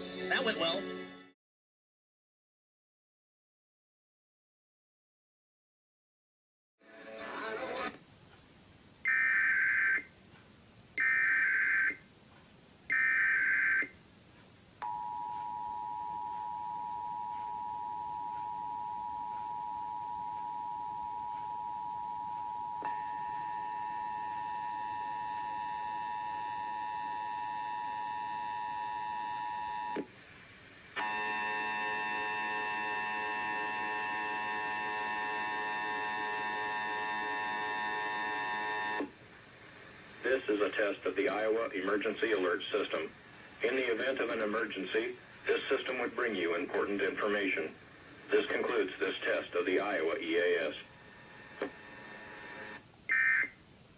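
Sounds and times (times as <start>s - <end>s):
buzzy multi-overtone tone: 18.7s - 30.0s, 31.0s - 39.1s.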